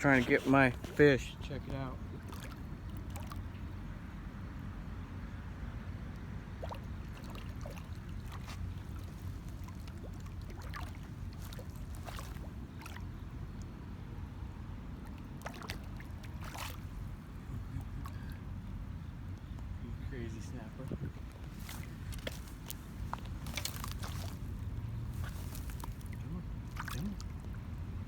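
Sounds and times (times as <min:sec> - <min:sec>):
water splashing and sloshing: 0:00.0 - 0:28.0
steady low rumble: 0:16.0 - 0:28.0.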